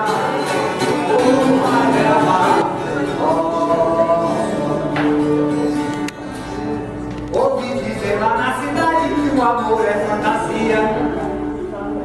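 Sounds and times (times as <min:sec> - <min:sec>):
voices singing long notes: 0:00.0 - 0:06.1.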